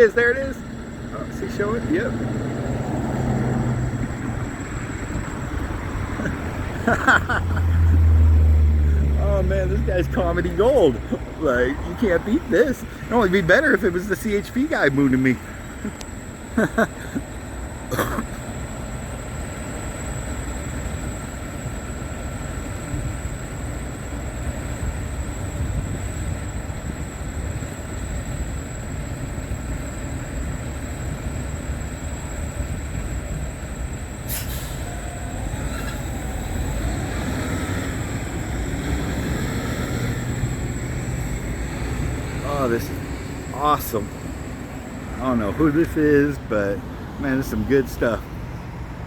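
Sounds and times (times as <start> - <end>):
road traffic rumble: 0.0 - 49.0.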